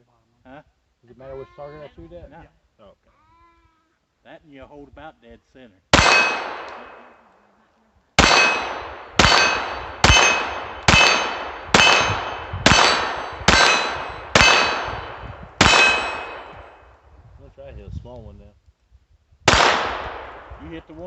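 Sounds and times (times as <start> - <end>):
steel target ringing: 6.0 - 7.0, 8.2 - 16.8
pistol shots: 6.0 - 7.1, 8.2 - 16.9, 19.5 - 20.9.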